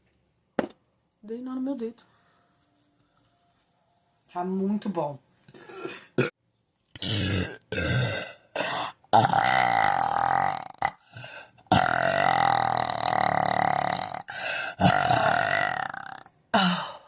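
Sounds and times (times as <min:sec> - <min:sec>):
woman belching: 0:07.0 - 0:11.0, 0:11.7 - 0:16.9.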